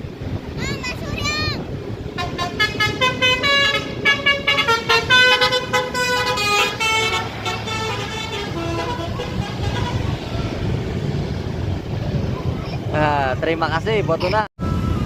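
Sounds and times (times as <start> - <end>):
bus engine: 0.0 - 15.0
traffic noise: 0.0 - 15.0
bus horn playing a tune: 2.1 - 10.3.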